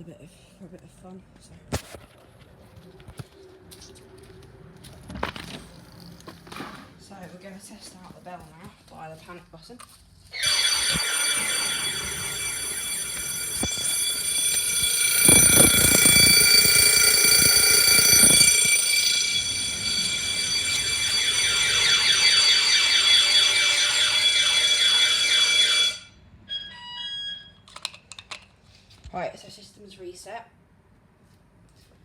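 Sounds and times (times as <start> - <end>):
electronic alarm siren sweeping: 10.4 - 27.6.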